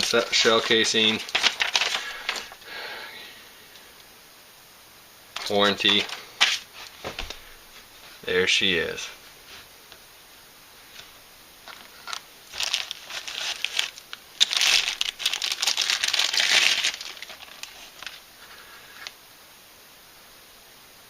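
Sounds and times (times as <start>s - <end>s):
packaging crinkling and rustling: 0.0s - 2.6s, 5.4s - 7.6s, 11.0s - 19.2s.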